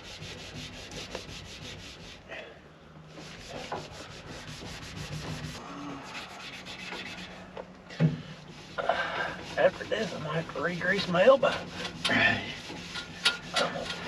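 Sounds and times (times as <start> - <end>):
wipe rubbing painted dash: 0.0 - 2.3, 3.1 - 14.0.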